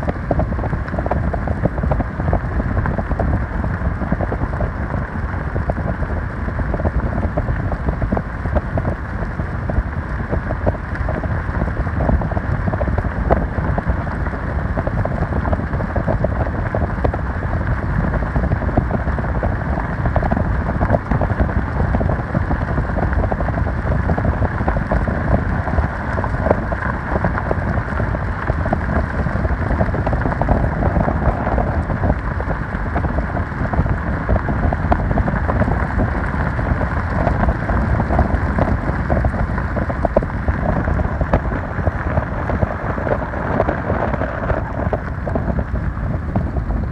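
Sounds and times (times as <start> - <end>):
small crackles: 0.0 - 46.9
meltwater rushing: 37.0 - 46.9.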